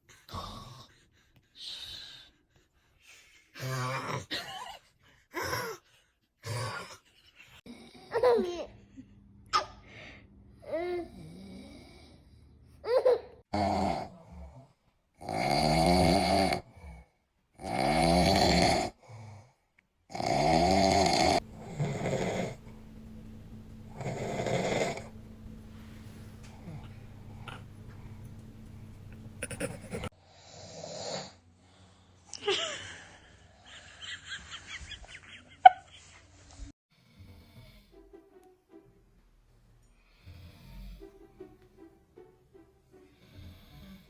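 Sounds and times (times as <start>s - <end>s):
man snoring: 11.1s - 12.3s, 13.5s - 17.0s, 17.6s - 19.2s, 20.1s - 22.7s, 23.9s - 25.2s, 43.2s - 44.0s.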